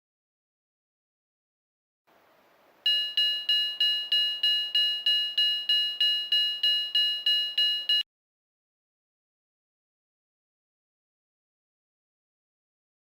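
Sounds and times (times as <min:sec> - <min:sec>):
crossing bell clanging: 0:02.9 - 0:08.0.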